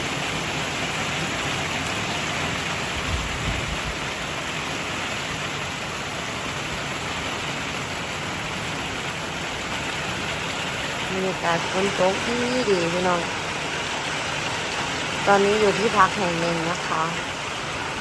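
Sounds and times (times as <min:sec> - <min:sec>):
rain falling: 0:00.0 - 0:18.0.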